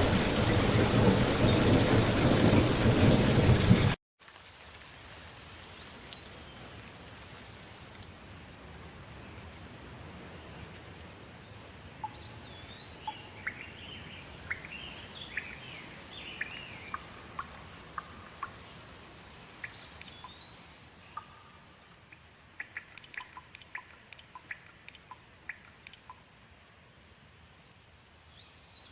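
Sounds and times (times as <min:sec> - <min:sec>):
steady rain: 0:00.0 - 0:28.9
drops ticking: 0:16.4 - 0:18.7, 0:21.1 - 0:26.2.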